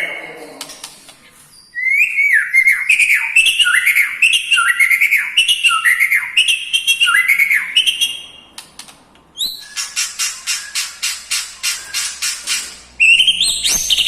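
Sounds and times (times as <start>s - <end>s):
bird singing: 1.5s - 8.6s, 9.4s - 14.0s
high twittering: 9.4s - 14.0s.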